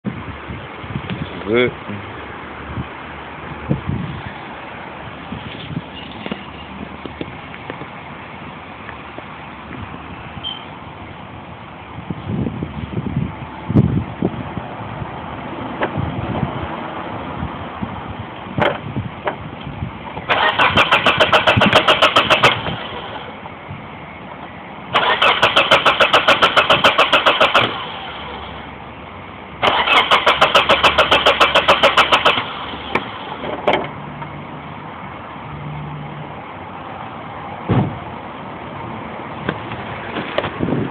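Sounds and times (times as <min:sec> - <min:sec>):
car engine cranking: 0:20.2 - 0:23.3, 0:24.9 - 0:28.5, 0:29.6 - 0:34.0.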